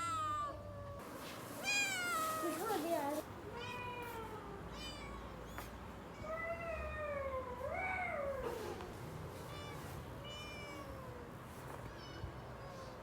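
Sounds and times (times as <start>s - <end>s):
cat meowing: 1.6s - 2.6s.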